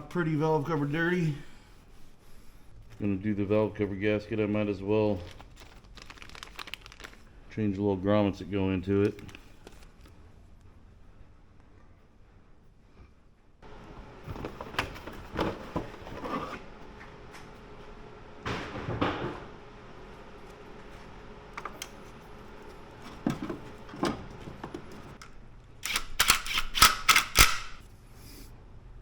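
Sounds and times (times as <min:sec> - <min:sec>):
hand tools clicking and scraping: 0:21.6 - 0:27.8
loud sharp clicks: 0:25.8 - 0:27.8.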